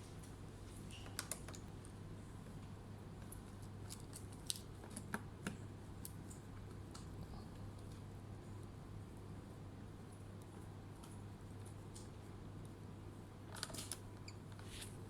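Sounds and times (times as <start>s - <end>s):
steady low hum: 5.6s - 15.0s.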